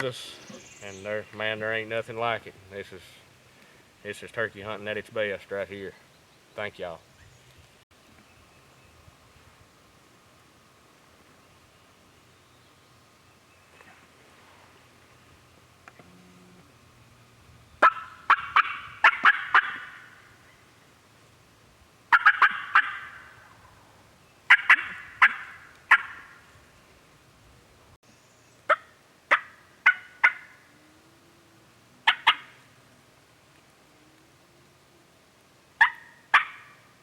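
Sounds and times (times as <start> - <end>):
turkey yelping: 17.8 - 20.3, 22.1 - 23.8, 24.5 - 26.4, 28.7 - 30.7, 32.0 - 32.6, 35.8 - 36.8.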